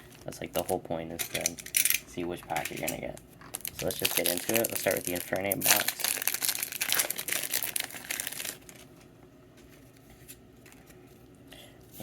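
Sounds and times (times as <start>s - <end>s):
foil pack crinkling: 2.6s - 9.1s.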